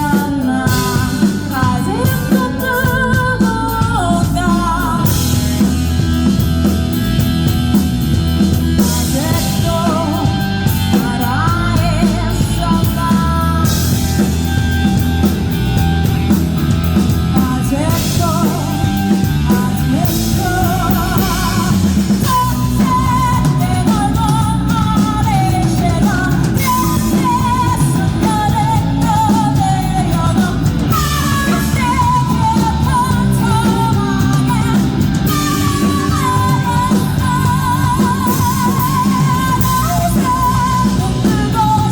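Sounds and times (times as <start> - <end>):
rock band with singer: 0.0 - 41.9.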